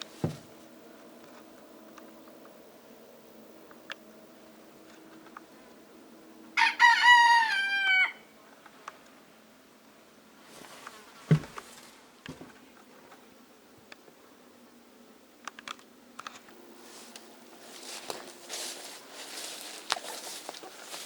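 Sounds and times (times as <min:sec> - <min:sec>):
thump: 0:00.2 - 0:00.5, 0:11.3 - 0:11.7
rustling: 0:10.4 - 0:12.7, 0:16.8 - 0:21.0
sharp knocks: 0:11.3 - 0:11.6.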